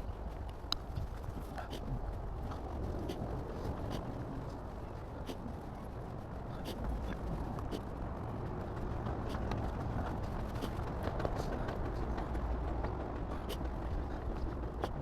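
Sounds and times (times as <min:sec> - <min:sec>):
low outdoor rumble: 0:00.0 - 0:15.0.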